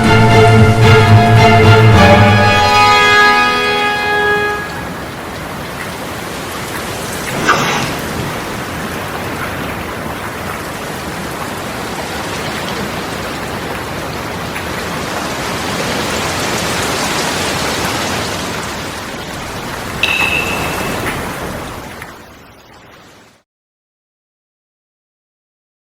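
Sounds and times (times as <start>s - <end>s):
heavy rain hiss: 0.2s - 22.0s
short ringing tone: 20.0s - 21.0s.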